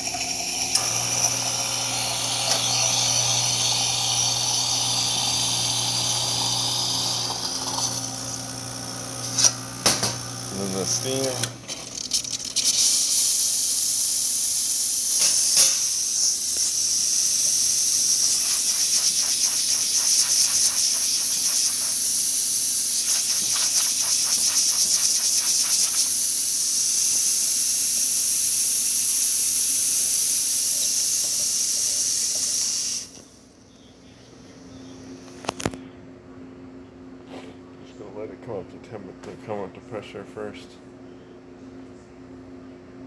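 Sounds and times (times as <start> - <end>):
steam wand hissing and sputtering: 0.0 - 7.8, 12.6 - 33.3.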